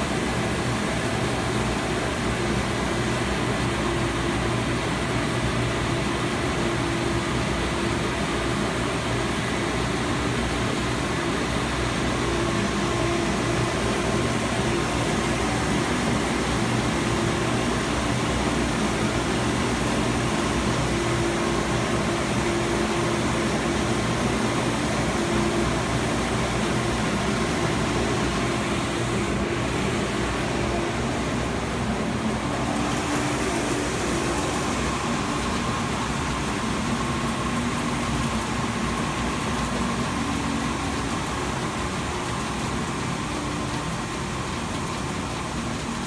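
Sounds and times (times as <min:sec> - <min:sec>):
belt sander running: 0:12.2 - 0:39.3.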